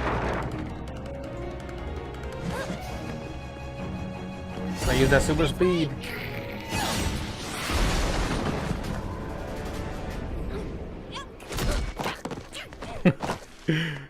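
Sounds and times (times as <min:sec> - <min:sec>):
music: 0:00.0 - 0:12.6.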